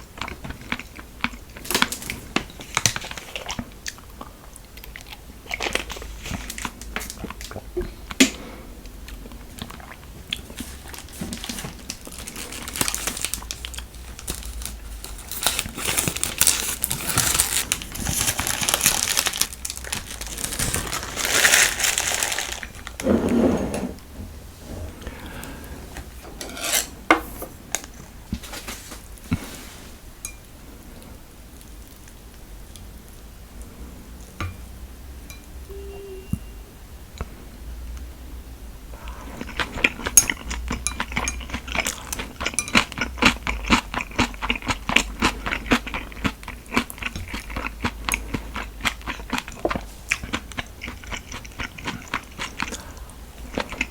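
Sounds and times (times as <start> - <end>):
plastic packaging crinkling: 10.5 - 23.0.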